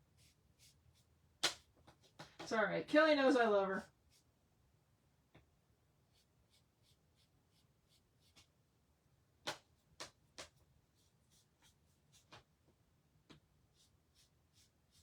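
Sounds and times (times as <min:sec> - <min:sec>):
scratchy colouring strokes: 0:00.1 - 0:02.2, 0:03.8 - 0:04.3, 0:06.0 - 0:08.6, 0:09.8 - 0:12.5, 0:13.6 - 0:15.0.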